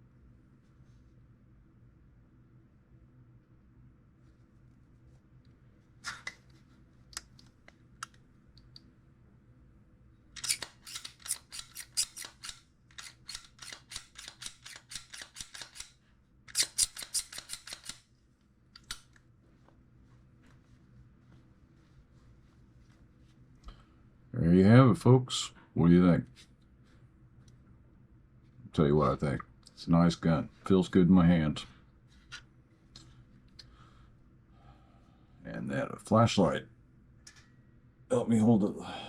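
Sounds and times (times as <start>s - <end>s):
pistol handling clicks: 10.4s - 18.0s.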